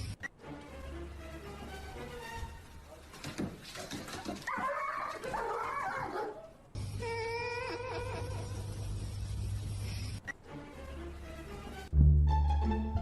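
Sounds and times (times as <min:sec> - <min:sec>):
dog whining and yipping: 0:04.4 - 0:08.6.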